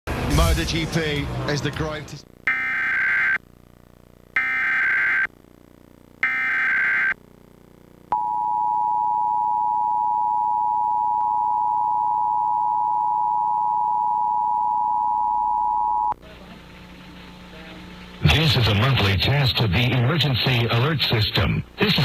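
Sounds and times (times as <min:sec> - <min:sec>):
two-tone electronic alert: 0:02.5 - 0:03.4, 0:04.4 - 0:05.3, 0:06.2 - 0:07.2
screeching digital data bursts: 0:06.2 - 0:07.2.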